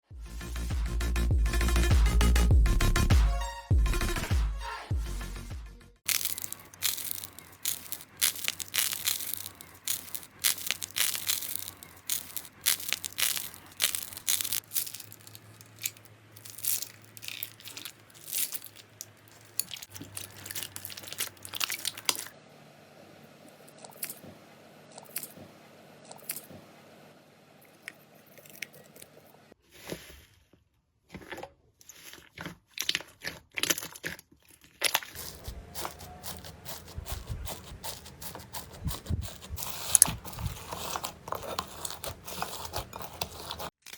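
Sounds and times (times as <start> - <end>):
slime crackling when squeezed: 6.1 - 22.3.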